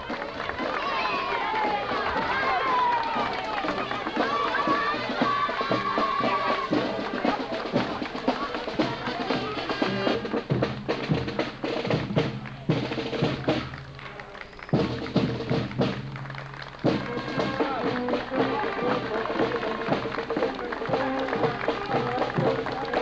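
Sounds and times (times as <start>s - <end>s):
marching band playing: 0.0s - 23.0s
snare and bass drums: 0.0s - 23.0s.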